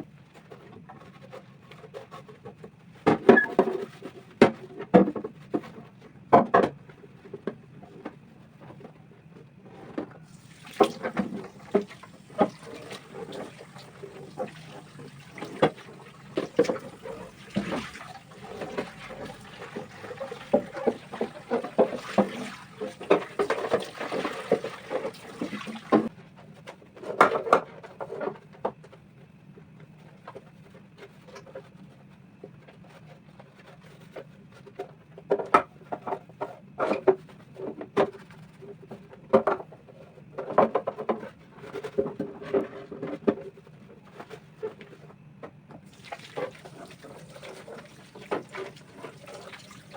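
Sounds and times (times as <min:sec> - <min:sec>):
water running: 0:10.3 - 0:26.1, 0:45.9 - 0:49.9.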